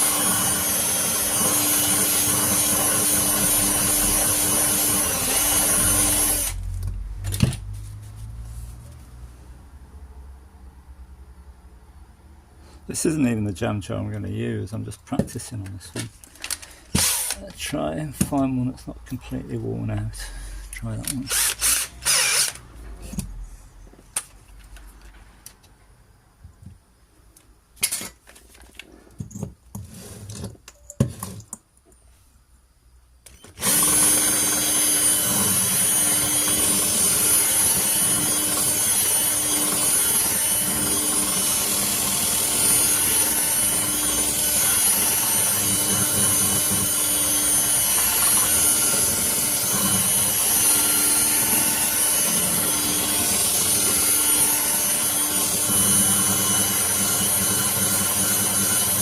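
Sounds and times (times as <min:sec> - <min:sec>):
electric drill grinding into glass: 0:00.0 - 0:06.7, 0:16.9 - 0:17.5, 0:21.4 - 0:22.7, 0:33.4 - 0:59.0.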